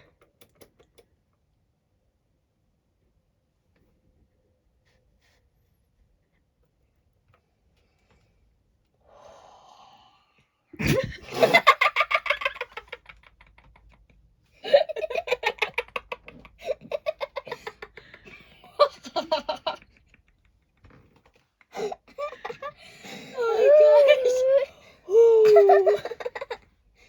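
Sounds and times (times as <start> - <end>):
hearty laughter: 10.8 - 20.7, 21.7 - 24.4, 25.4 - 26.6.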